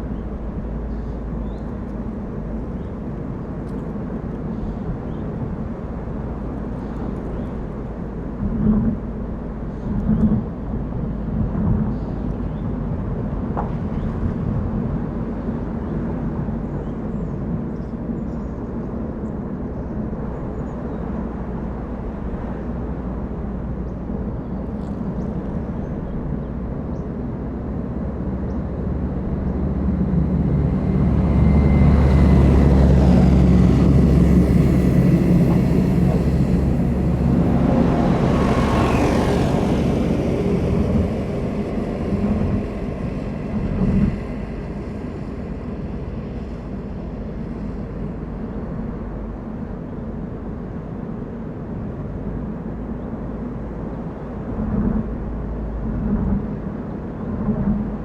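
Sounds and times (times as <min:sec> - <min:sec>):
tyres on the road: 0:00.0 - 0:58.0
car engine: 0:29.2 - 0:49.9.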